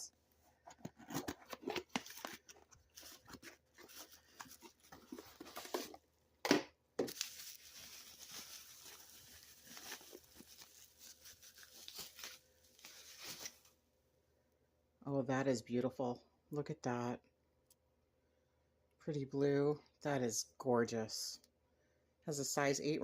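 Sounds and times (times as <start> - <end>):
wrapping crinkling and tearing: 0.6 - 6.0, 7.0 - 13.7.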